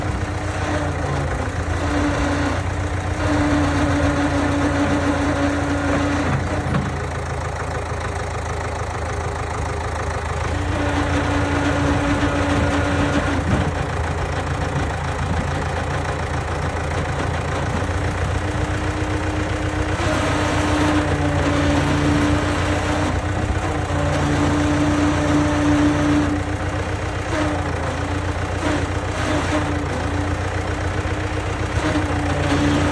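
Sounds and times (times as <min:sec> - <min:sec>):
diesel engine running: 0:00.0 - 0:32.9.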